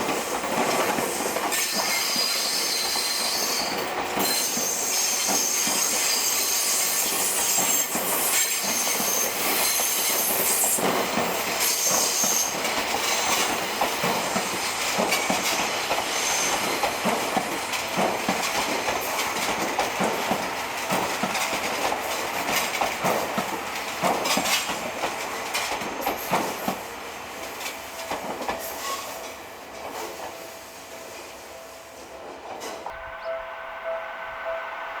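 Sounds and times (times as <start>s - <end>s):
train wheels squealing on rails: 0.0s - 35.0s
wheels clicking over rail joints: 10.7s - 26.8s.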